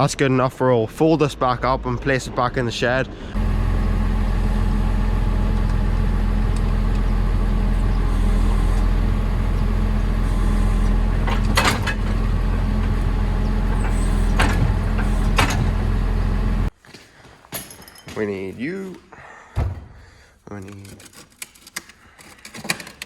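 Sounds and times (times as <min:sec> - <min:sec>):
tractor diesel engine running: 0:03.3 - 0:16.7.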